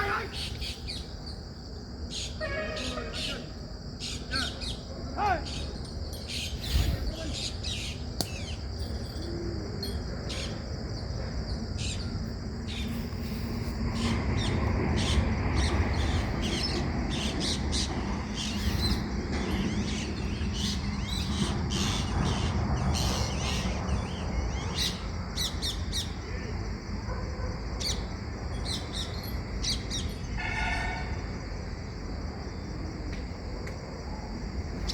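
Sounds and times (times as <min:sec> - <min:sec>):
high-pitched insect drone: 0:00.0 - 0:22.4
birds chirping: 0:00.0 - 0:26.2
low rumbling background noise: 0:00.0 - 0:30.4, 0:31.0 - 0:34.9.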